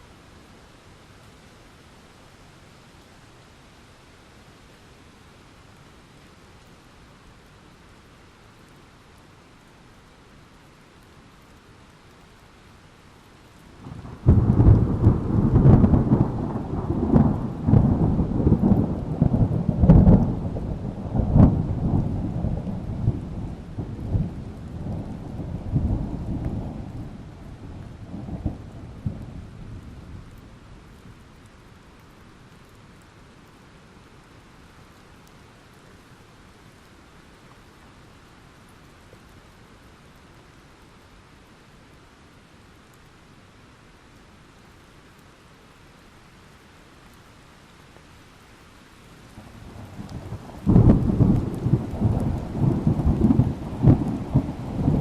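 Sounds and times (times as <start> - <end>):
steady rain: 0.0 - 55.0
thunder rumbling: 13.8 - 30.8, 49.3 - 55.0.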